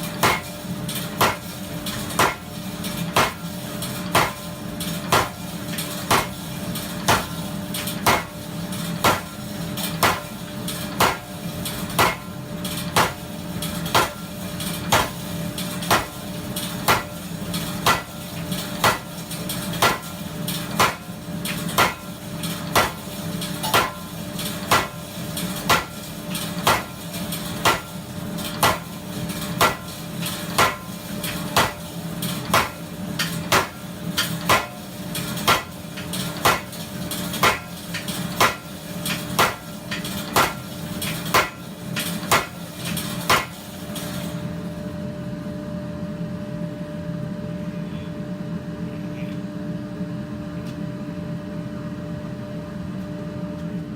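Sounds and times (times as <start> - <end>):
power hammer striking steel bar: 0.1 - 0.5, 1.1 - 3.5, 4.1 - 4.5, 5.1 - 8.4, 9.0 - 44.1.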